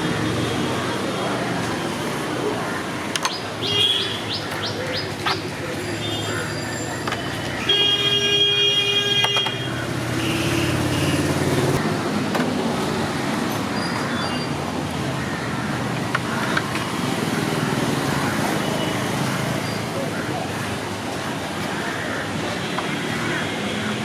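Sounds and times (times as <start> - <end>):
street traffic engines: 0.0 - 24.0
vehicle horn: 3.6 - 4.2, 7.6 - 11.6.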